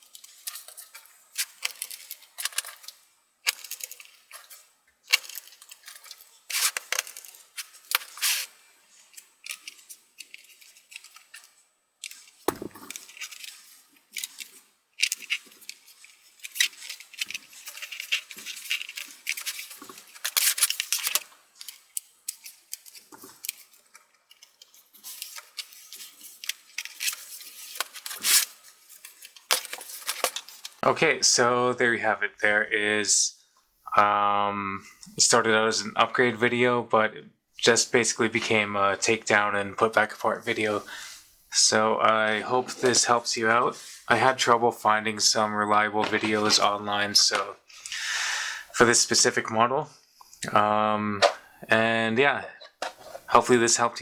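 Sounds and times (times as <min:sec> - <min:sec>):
small parts clicking and scraping: 0:00.0 - 0:30.8, 0:52.4 - 0:53.6.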